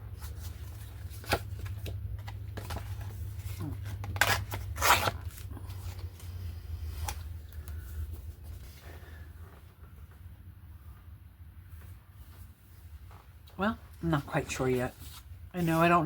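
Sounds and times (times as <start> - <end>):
paper shuffling and rustling: 0.0 - 9.2, 14.1 - 16.0
steady low hum: 0.0 - 16.0.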